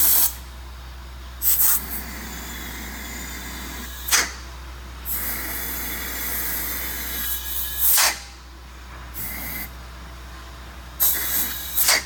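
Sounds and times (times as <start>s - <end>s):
low shop hum: 0.0s - 12.0s
compressed air hisses: 11.0s - 12.0s.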